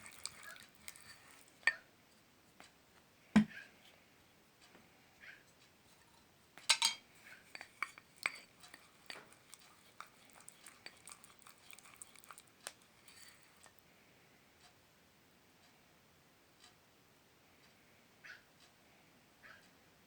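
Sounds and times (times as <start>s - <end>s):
spoon clinking against a dish: 0.0s - 1.8s, 6.7s - 13.8s.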